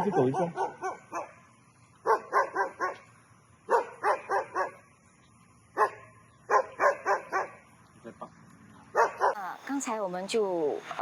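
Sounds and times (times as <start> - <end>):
dog barking fiercely: 0.0 - 1.4, 2.0 - 3.0, 3.7 - 4.8, 5.8 - 7.6, 8.9 - 9.4.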